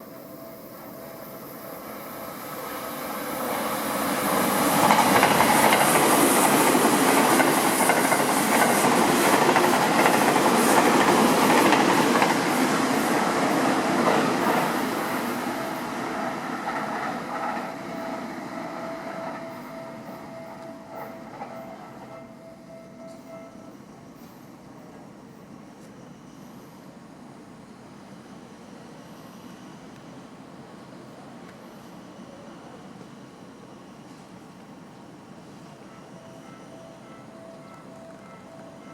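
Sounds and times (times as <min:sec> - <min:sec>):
train wheels clicking over rail joints: 0:03.4 - 0:15.4.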